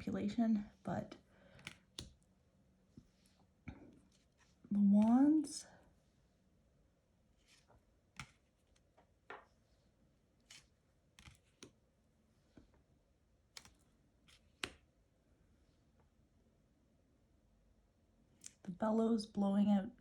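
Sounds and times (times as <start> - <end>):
cards flipped and set down: 7.4 - 9.5, 10.4 - 11.8, 13.5 - 14.8.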